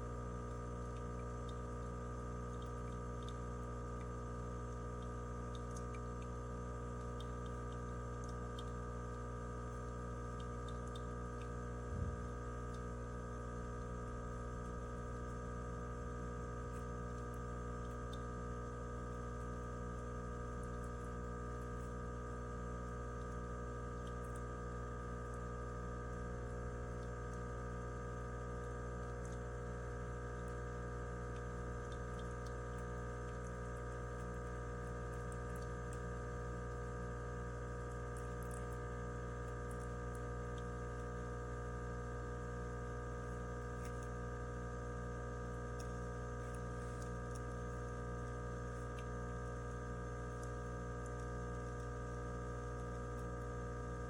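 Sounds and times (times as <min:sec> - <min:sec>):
steady hum: 0:00.0 - 0:19.0.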